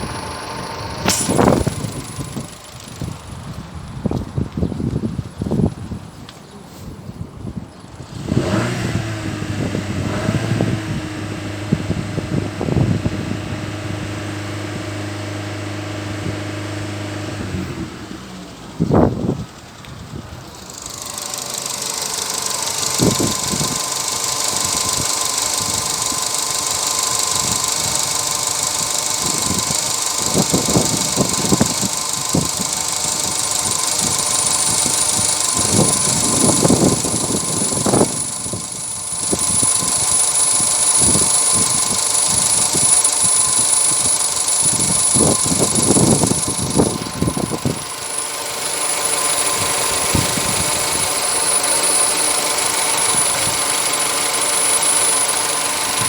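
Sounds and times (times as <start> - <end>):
power steering pump whistle: 0.0 - 3.4, 20.7 - 56.0
car engine running: 0.0 - 6.2, 7.9 - 56.0.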